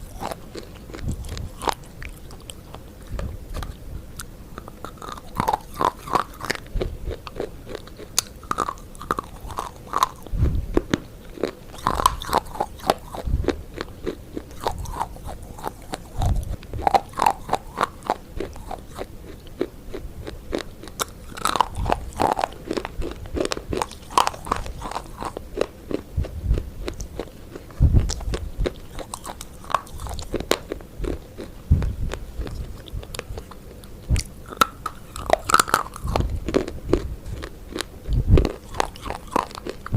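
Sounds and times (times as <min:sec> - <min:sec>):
crunchy food chewing: 0:00.0 - 0:39.9
low thuds: 0:10.3 - 0:11.0, 0:27.8 - 0:28.7.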